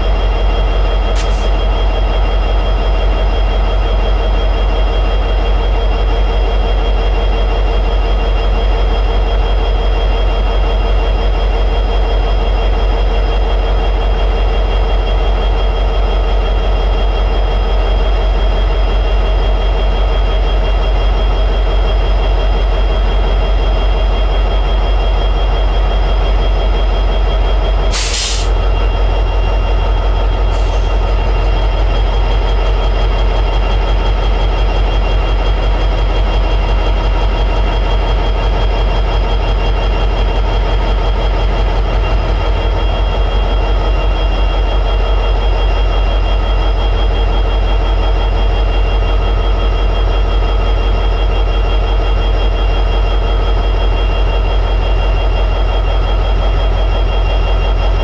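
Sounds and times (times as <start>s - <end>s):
diesel locomotive idling drone: 0.0s - 58.0s
air hiss: 27.9s - 28.5s.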